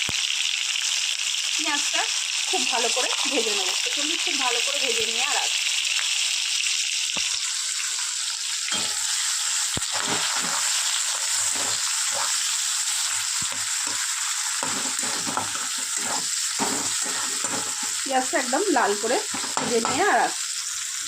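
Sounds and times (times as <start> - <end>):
onions sizzling in oil: 0.0 - 21.0
scraping stirring strokes: 9.9 - 18.4, 19.2 - 20.2.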